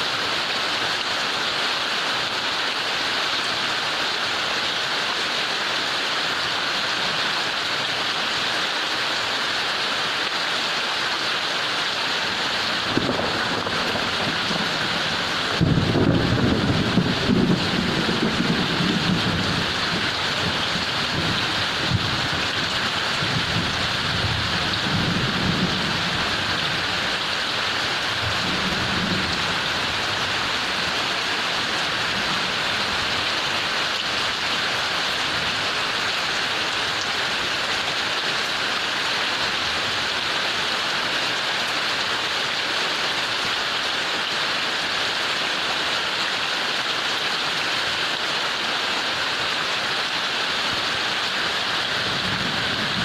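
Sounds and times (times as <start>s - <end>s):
heavy rain falling: 0.0s - 53.0s
thunder rumbling: 12.8s - 27.0s, 28.0s - 31.0s.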